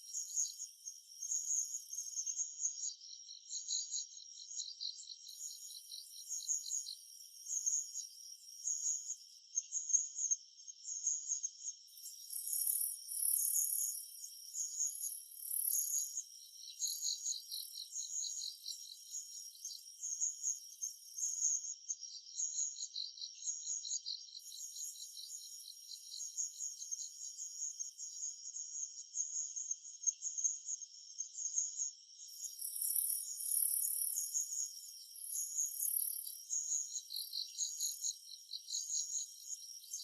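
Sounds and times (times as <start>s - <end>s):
insects chirping trills: 0.0s - 40.0s.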